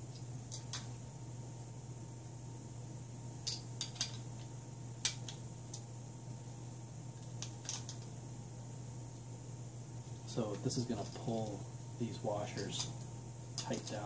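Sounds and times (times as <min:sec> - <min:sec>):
small metal parts clinking: 0:13.6 - 0:14.0.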